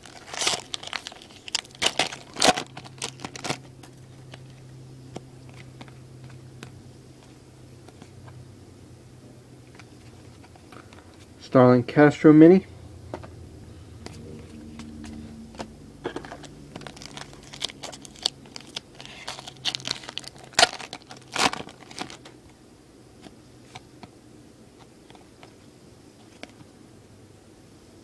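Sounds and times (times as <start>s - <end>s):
foil wrapper crinkling and tearing: 0.0s - 4.6s, 16.1s - 22.4s
cards being handled: 14.0s - 22.4s.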